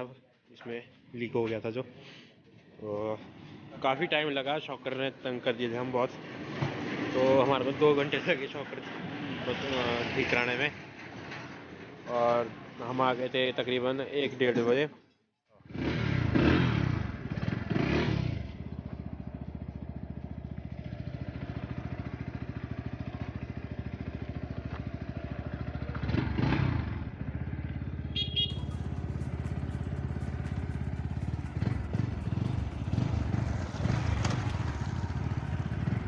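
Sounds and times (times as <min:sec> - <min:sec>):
motorcycle engine running: 0:15.8 - 0:36.0.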